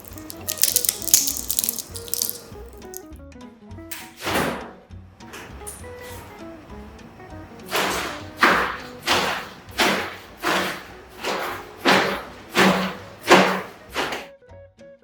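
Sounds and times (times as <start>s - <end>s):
regular thumps: 0.0s - 3.0s.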